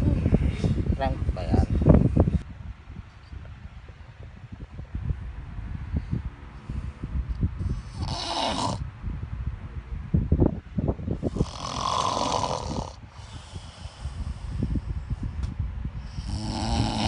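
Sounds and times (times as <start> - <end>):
man snoring: 8.0 - 8.8, 11.3 - 14.0, 16.1 - 17.0.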